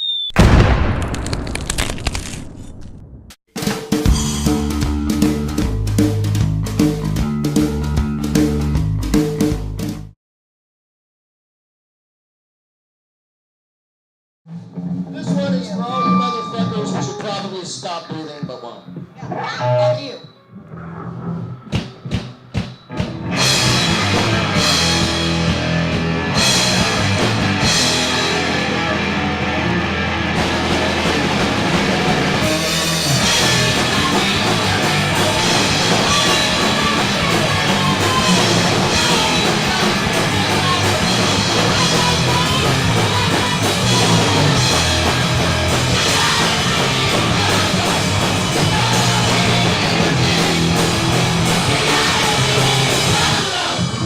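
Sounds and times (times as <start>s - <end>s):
punk rock band playing live: 3.6s - 9.8s, 21.9s - 54.0s.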